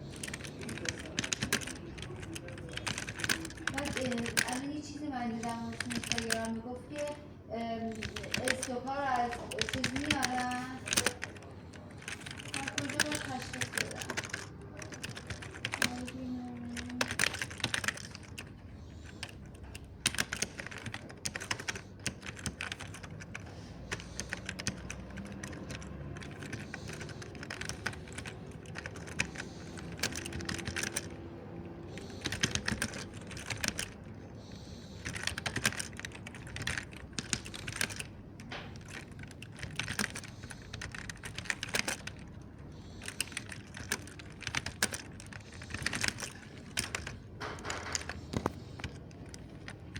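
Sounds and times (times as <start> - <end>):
mechanical keyboard typing: 0.0 - 49.9.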